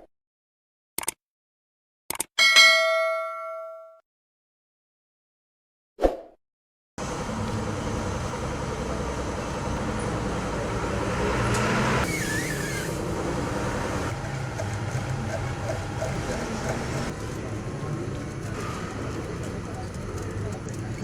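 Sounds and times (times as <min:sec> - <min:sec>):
low mechanical hum: 0:07.0 - 0:21.0
hiss: 0:12.0 - 0:14.0.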